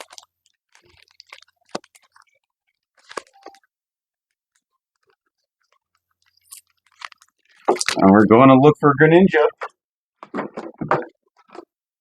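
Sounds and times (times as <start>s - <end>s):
plastic shrink-wrap crinkling: 0.0s - 3.6s, 4.3s - 8.1s.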